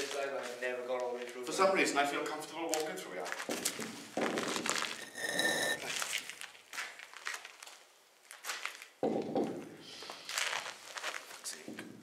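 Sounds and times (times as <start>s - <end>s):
footsteps scuffing and crunching: 2.6s - 5.1s, 10.3s - 11.4s.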